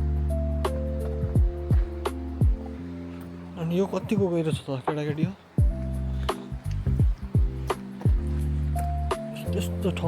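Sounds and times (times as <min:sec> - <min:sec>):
low synth notes: 0:00.0 - 0:04.4, 0:05.6 - 0:09.9
deep drum hits dropping in pitch: 0:06.8 - 0:08.4.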